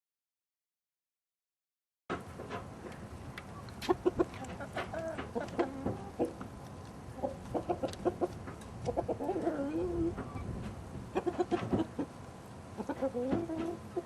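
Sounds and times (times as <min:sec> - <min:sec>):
hens clucking: 0:02.9 - 0:14.0.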